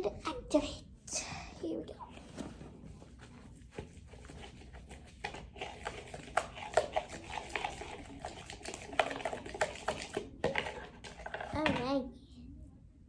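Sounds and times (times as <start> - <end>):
slime squelching while stirred: 2.0 - 12.0.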